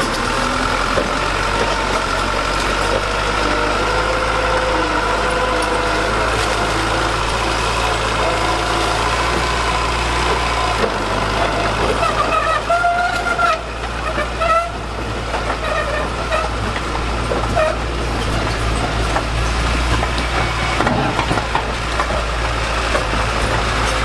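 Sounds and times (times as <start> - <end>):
diesel engine humming: 0.0 - 24.0.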